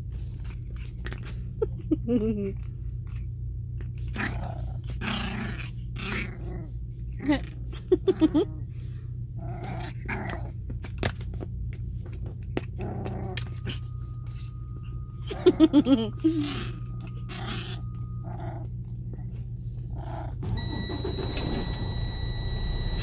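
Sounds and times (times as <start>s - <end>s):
puppy play-growling: 2.5s - 20.5s
low hum: 11.4s - 23.0s
puppy yipping: 15.2s - 18.4s.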